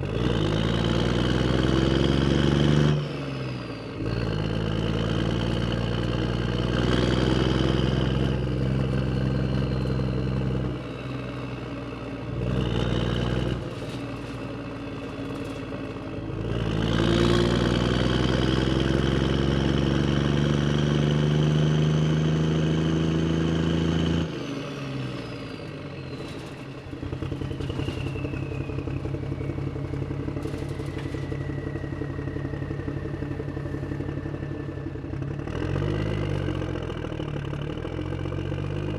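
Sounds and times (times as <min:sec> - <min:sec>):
engine idling: 0:25.2 - 0:38.9.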